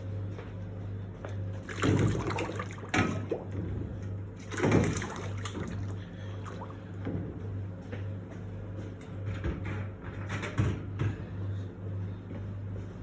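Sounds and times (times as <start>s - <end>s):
steady low hum: 0.0s - 10.2s
water sloshing and splashing: 1.3s - 7.9s.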